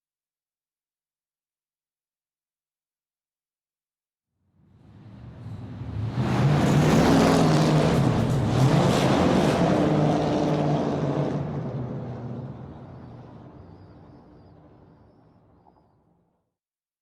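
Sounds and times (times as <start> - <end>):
car engine passing by: 4.8 - 14.9.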